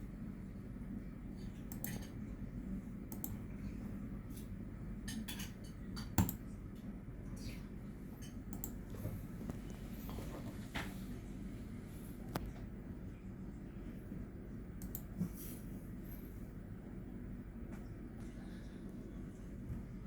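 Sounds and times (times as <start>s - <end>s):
steady low hum: 0.0s - 20.0s
light clicks and taps: 1.6s - 2.2s, 8.2s - 10.2s.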